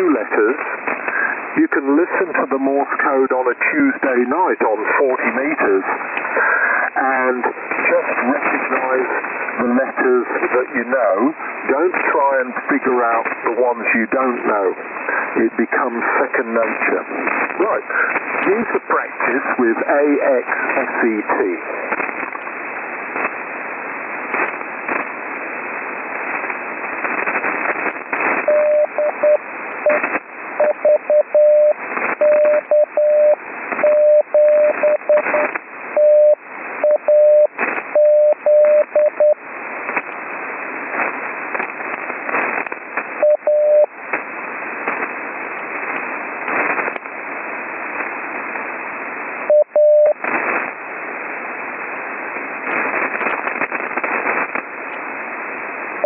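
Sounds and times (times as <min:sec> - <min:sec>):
radio band hiss: 0:00.0 - 0:56.0
static crashes: 0:11.4 - 0:30.7, 0:39.2 - 0:56.0
morse code beeping tone: 0:28.5 - 0:29.4, 0:30.6 - 0:35.4, 0:36.0 - 0:39.4.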